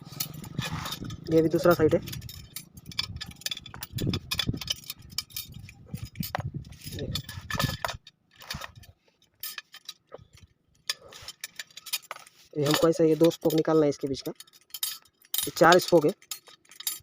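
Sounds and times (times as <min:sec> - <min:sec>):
steel spokes clinking and rattling: 0:00.0 - 0:17.0.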